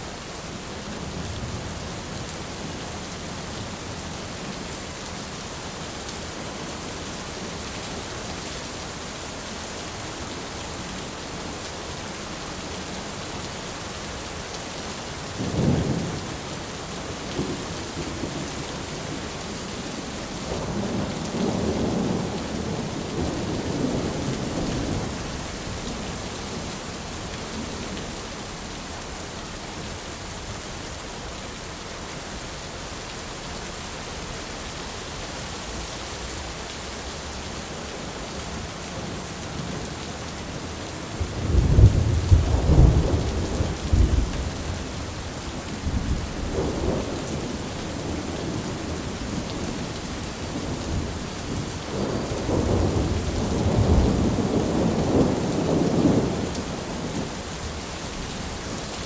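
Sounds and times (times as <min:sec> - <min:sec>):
steady rain falling: 0:00.0 - 0:59.0
rolling thunder: 0:41.2 - 0:44.9, 0:50.6 - 0:57.3.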